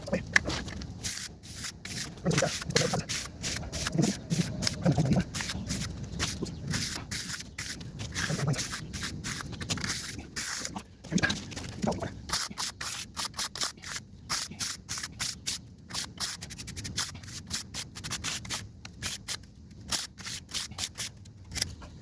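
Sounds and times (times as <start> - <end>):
tool scraping wet concrete: 0.4 - 15.1.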